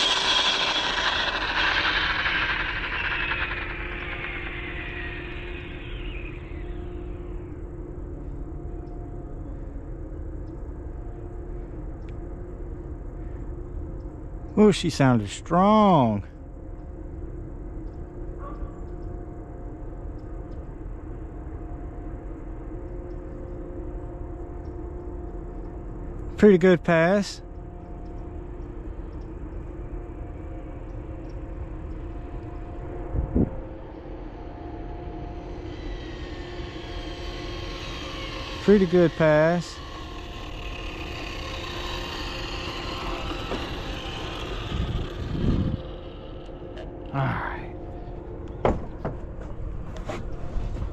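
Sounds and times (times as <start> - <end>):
engine rumble and hum: 0.0 - 14.5, 27.4 - 50.9
faint whine: 0.0 - 50.9.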